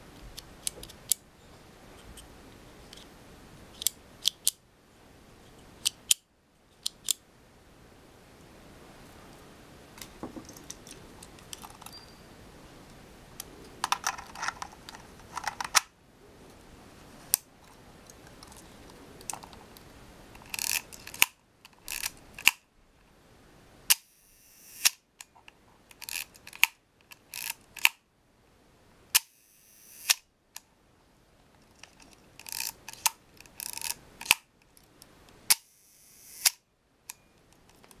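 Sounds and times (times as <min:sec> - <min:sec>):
film advance ratcheting clicks: 0:20.4 - 0:21.3, 0:21.9 - 0:22.6, 0:25.9 - 0:28.0, 0:32.4 - 0:34.4, 0:35.5 - 0:36.6
camera shutter clicks: 0:29.2 - 0:30.2, 0:35.5 - 0:36.6.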